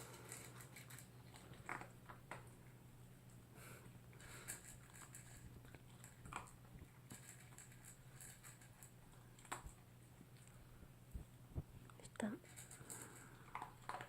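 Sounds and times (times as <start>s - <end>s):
dog crunching food: 0.0s - 2.8s, 4.1s - 10.6s, 12.4s - 14.0s
low steady hum: 0.0s - 14.0s.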